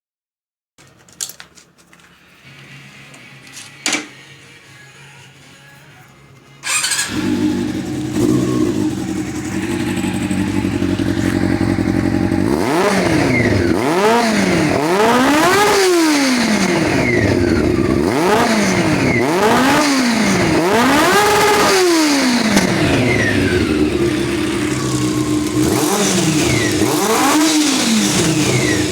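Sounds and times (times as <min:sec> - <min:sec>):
motorcycle engine revving: 0:06.6 - 0:28.9.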